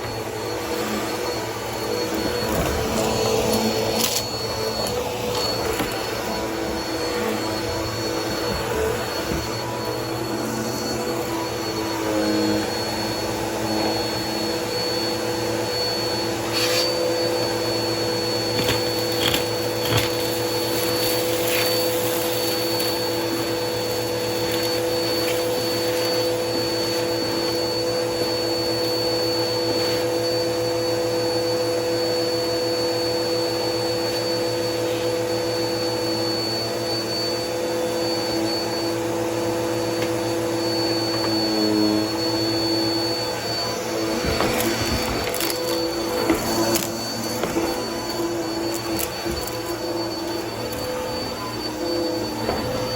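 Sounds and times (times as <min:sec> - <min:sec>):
vacuum cleaner running: 0:00.0 - 0:52.9
debris crackling in vacuum nozzle: 0:18.4 - 0:23.1, 0:43.5 - 0:51.4.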